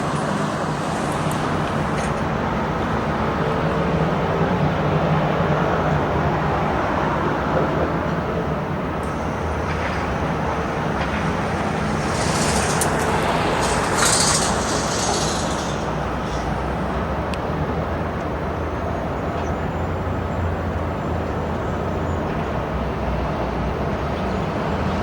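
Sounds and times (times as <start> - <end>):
loud hiss: 0.0 - 2.3, 9.1 - 17.0
engine rumble of heavy machinery: 0.0 - 25.0.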